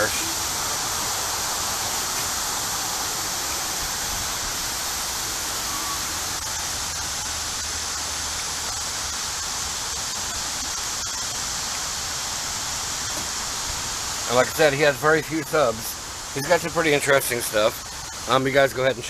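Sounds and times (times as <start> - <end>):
background hiss: 0.0 - 19.0.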